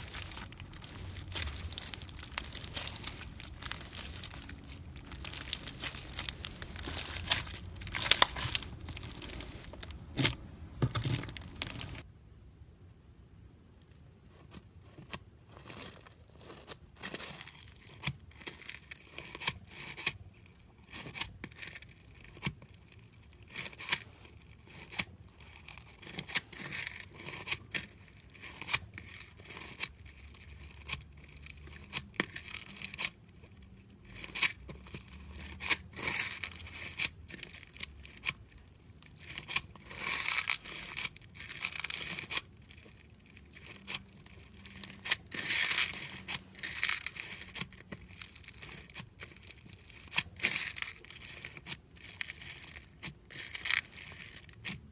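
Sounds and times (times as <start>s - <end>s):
slime crackling and popping: 0.0s - 12.0s, 34.2s - 54.9s.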